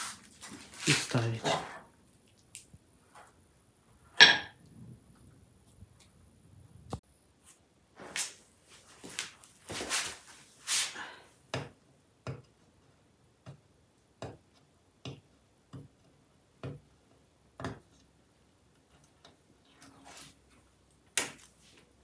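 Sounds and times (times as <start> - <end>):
scraping and rustling: 0.0 - 1.8, 8.0 - 11.2.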